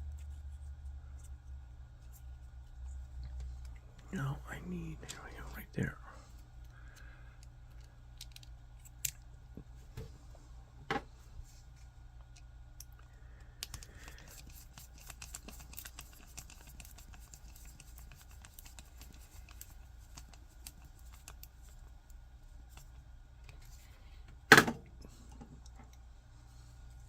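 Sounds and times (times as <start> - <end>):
plastic parts clicking: 7.4 - 9.2.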